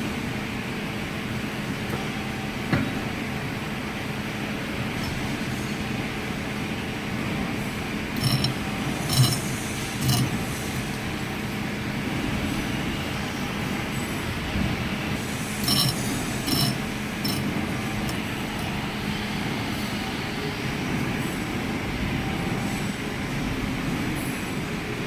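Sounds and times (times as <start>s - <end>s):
metal lathe humming: 8.1s - 11.7s, 15.3s - 19.2s
short metallic knocks: 8.2s - 10.4s.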